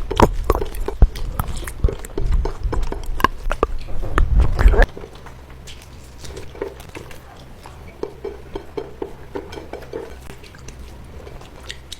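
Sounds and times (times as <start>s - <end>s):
wet mouth smacks: 0.0s - 4.9s
chewing noodles: 0.0s - 11.9s.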